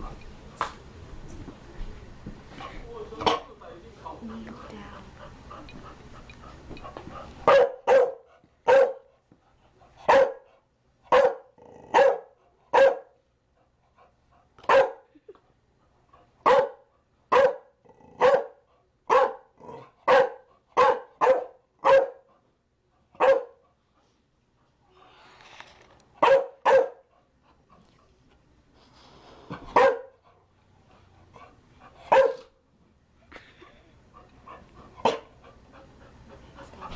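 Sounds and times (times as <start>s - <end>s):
dog barking: 7.4s - 9.1s, 10.1s - 10.5s, 11.1s - 13.2s, 14.7s - 15.0s, 16.4s - 22.3s, 23.2s - 23.6s, 26.2s - 27.1s, 29.8s - 30.2s, 32.1s - 32.5s, 35.0s - 35.3s.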